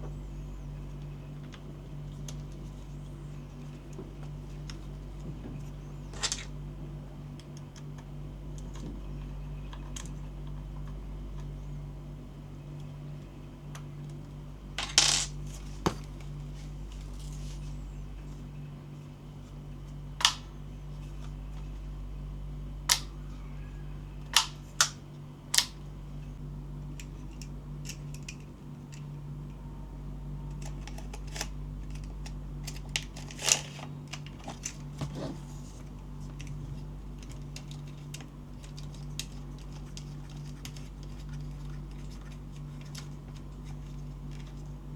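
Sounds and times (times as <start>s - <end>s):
steady low hum: 0.0s - 44.9s
plastic parts clicking and clacking: 37.2s - 44.6s.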